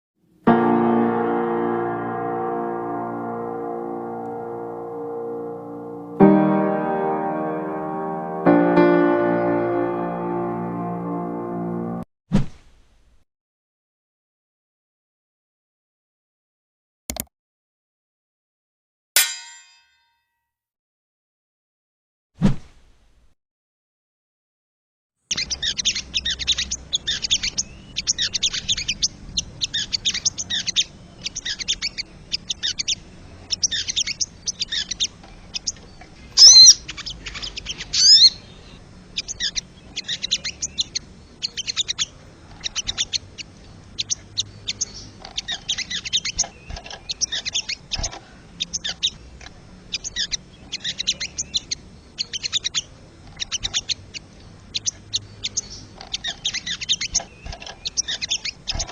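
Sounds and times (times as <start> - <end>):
loud sweeping bird calls: 25.3 - 58.9.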